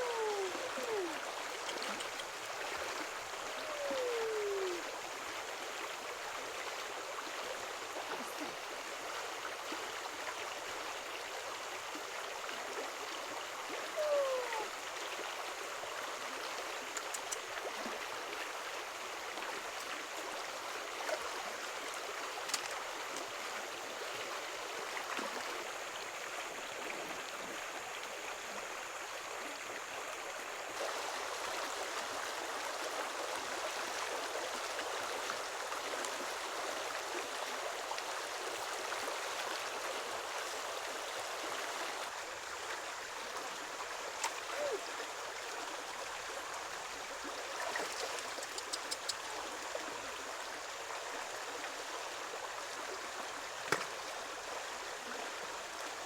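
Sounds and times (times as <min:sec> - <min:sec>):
running water: 0:00.0 - 0:56.0
faint clicks: 0:01.6 - 0:02.4, 0:16.9 - 0:17.5, 0:47.7 - 0:49.7.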